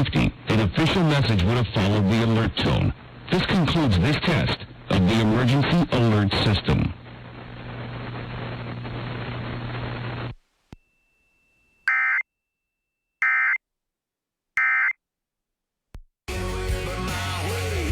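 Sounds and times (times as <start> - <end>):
steady hiss with low hum: 0.0 - 10.8
music: 16.3 - 17.9.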